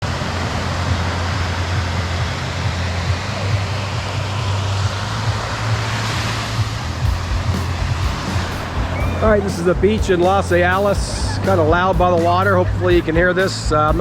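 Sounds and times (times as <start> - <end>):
constant low rumble: 0.0 - 14.0
surf washing on a beach: 0.0 - 14.0.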